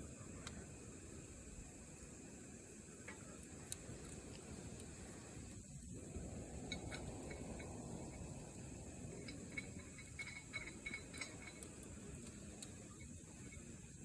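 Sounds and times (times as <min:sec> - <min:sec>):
campfire crackling and popping: 0:03.0 - 0:14.0.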